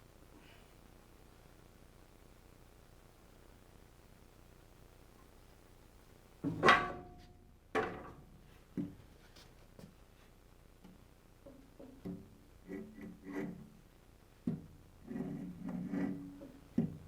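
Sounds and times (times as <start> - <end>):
tools knocking and clattering: 6.4 - 8.9.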